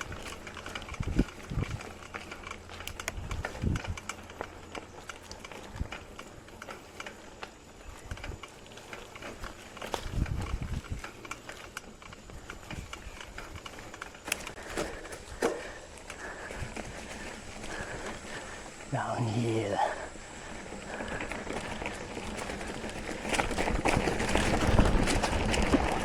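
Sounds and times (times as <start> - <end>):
wheels thumping over bumps: 0.0 - 18.9, 19.7 - 26.0
mountain bike rattling on dirt trail: 0.0 - 26.0.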